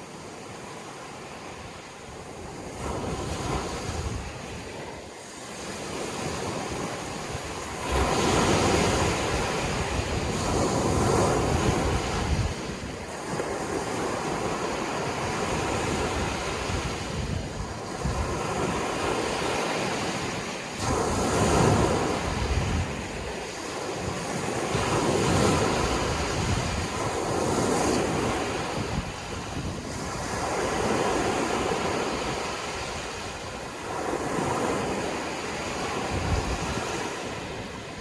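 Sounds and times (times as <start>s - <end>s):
sea waves washing onto shore: 0.0s - 38.0s
wind buffeting microphone: 1.6s - 38.0s.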